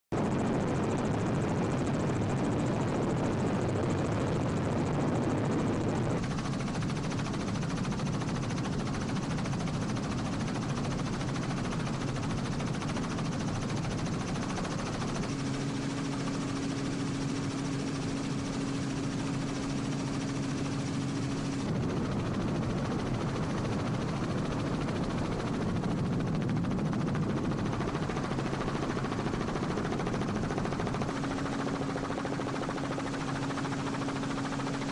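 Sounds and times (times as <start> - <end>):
helicopter engine and rotor: 0.1 - 34.9.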